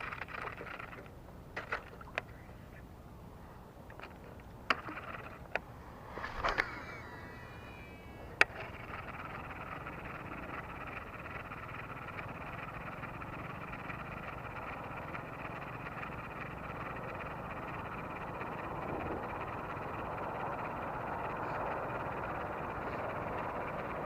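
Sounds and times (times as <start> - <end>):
sharp click: 3.9 - 7.2.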